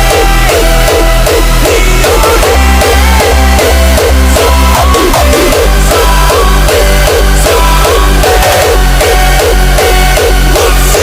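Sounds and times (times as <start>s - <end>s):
loud electronic music: 0.0s - 11.0s.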